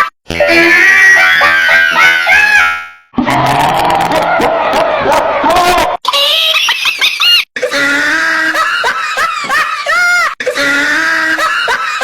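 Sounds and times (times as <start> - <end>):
high-pitched squealing laughter: 6.0 - 12.0.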